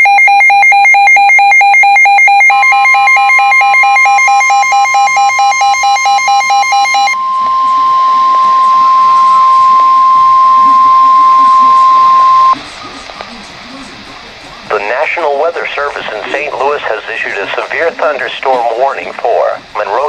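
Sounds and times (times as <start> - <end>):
rapid electronic beeping: 0.0 - 12.6
steady high alarm tone: 0.0 - 12.6.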